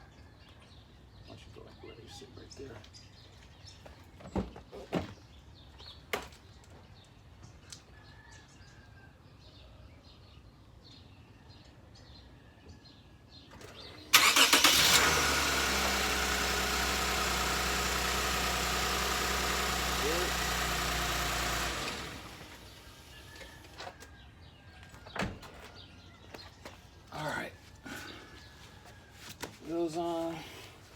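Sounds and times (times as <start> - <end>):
car engine starting and idling: 14.1 - 23.6.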